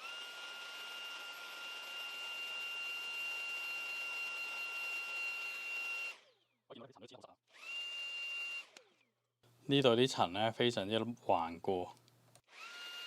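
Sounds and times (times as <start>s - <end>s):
electric cleaning tool whining: 0.0s - 6.4s, 7.5s - 8.9s, 12.4s - 13.0s.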